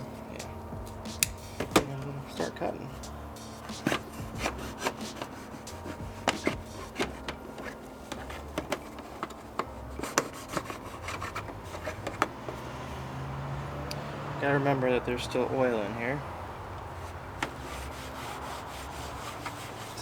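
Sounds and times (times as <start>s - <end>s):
knife sawing through plastic bottle: 0.0s - 12.3s, 17.4s - 20.0s.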